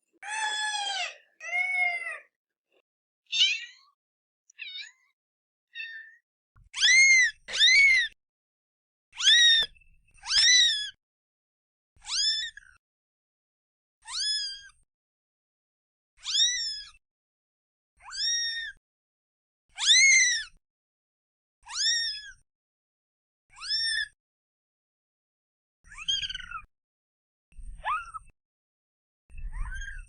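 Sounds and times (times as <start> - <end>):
cat meowing: 3.3 - 5.1, 6.8 - 8.1, 9.2 - 10.9, 18.0 - 18.8, 21.7 - 22.3, 29.5 - 30.0.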